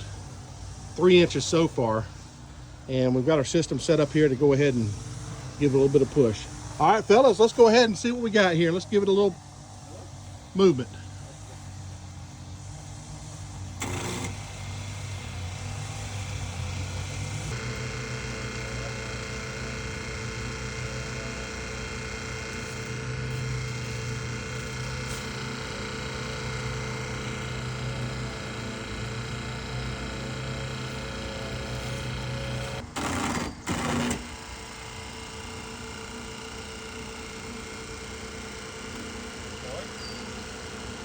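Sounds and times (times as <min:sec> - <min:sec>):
small engine running: 0:00.0 - 0:41.0
loud noisy bursts: 0:10.5 - 0:41.0.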